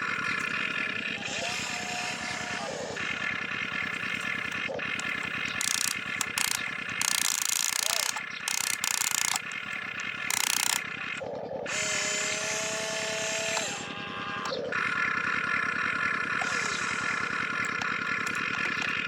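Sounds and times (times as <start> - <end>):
electric gear motors whirring: 0.0 - 19.0
rapid ratcheting tick: 3.0 - 11.2.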